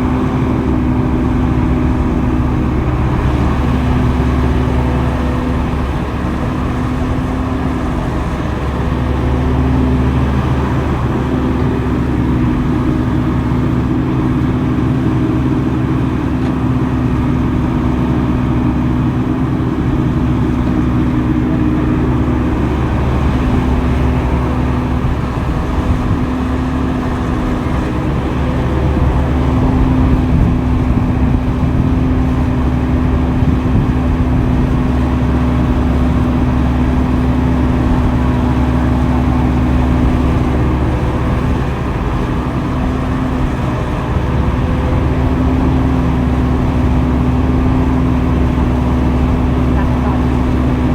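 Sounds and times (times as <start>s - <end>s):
diesel engine humming: 0.0s - 50.9s.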